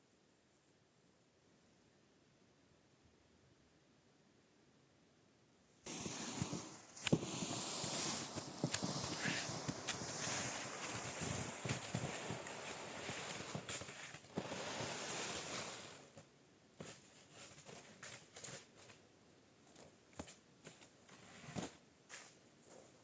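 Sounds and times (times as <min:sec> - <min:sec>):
steady rustling: 0:05.9 - 0:19.0.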